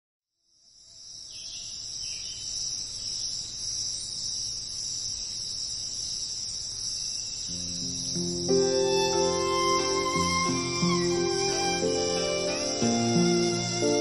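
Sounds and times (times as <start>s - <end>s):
insects chorus: 0.4s - 14.0s.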